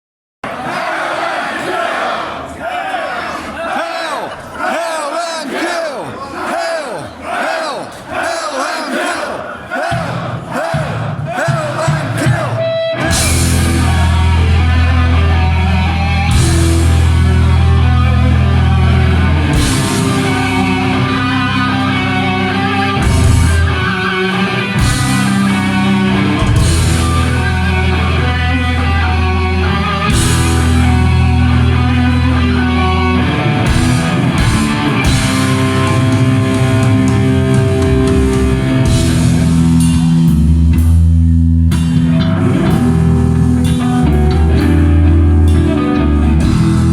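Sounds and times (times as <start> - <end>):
heavy metal band playing: 9.8 - 46.9.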